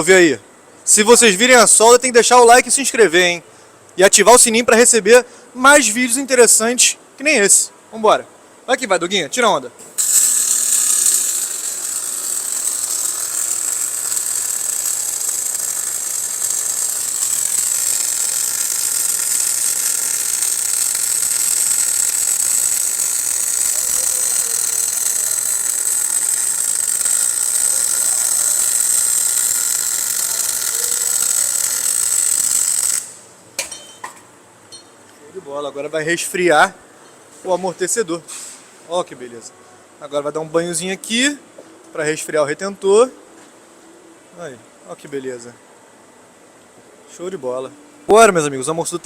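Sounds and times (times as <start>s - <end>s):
arc welding hiss: 9.9s - 33.3s.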